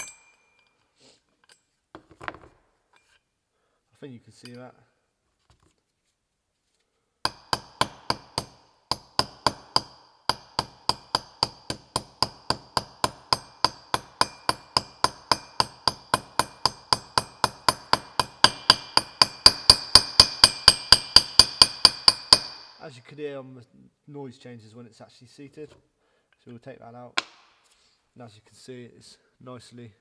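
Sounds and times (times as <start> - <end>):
hammer striking metal: 0.0 - 0.6, 7.3 - 22.8.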